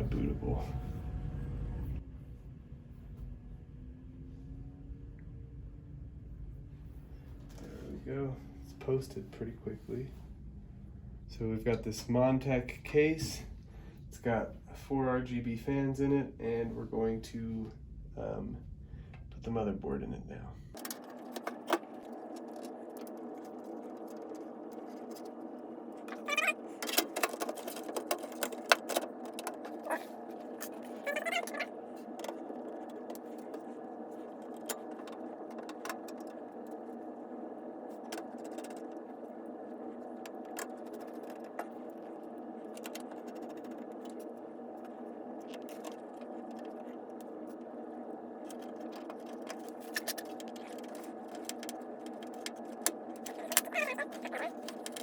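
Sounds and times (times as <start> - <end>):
steady low hum: 0.0 - 55.0
computer parts clicking and scraping: 20.8 - 36.9, 37.9 - 39.2, 40.0 - 47.6, 48.4 - 55.0.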